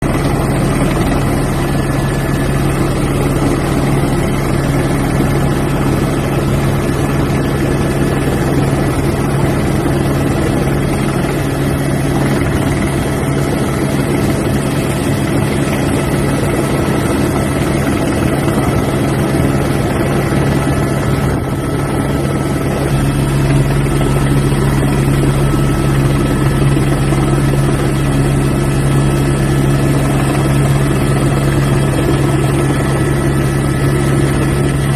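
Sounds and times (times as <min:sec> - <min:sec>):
helicopter rotor and engine drone: 0:00.0 - 0:34.9.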